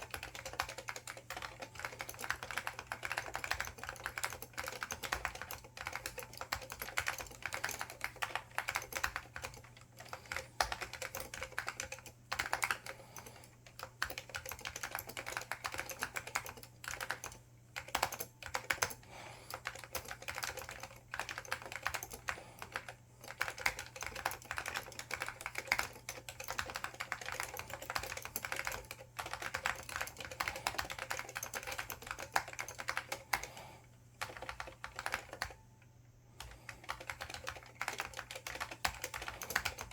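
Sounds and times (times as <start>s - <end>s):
keyboard typing fast: 0.0s - 35.6s, 36.4s - 39.9s.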